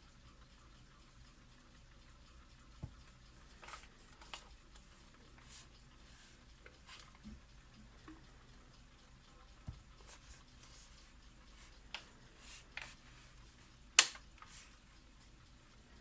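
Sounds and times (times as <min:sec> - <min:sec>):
clicks and taps of handling: 0:14.0 - 0:14.6.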